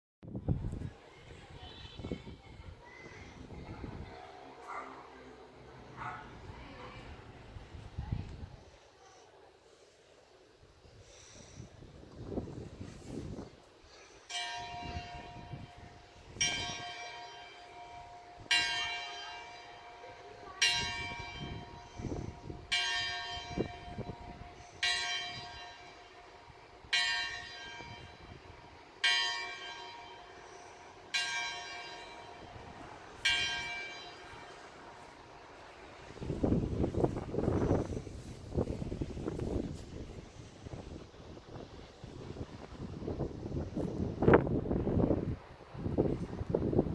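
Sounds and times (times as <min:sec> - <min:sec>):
church bell ringing: 0:14.3 - 0:36.4.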